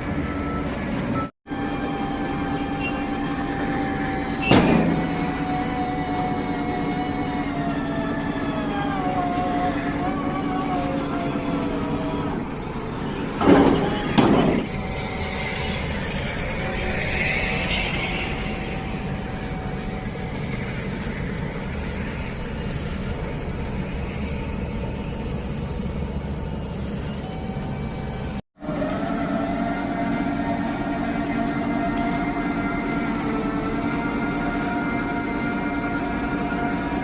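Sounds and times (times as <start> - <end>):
heavy machine engine rumbling: 0.0 - 37.0.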